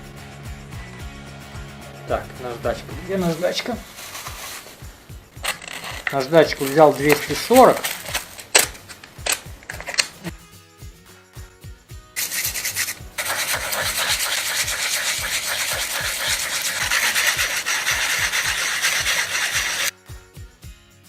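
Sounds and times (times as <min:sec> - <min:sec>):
brake pad rubbed on sandpaper: 0:03.2 - 0:04.9, 0:12.2 - 0:19.9.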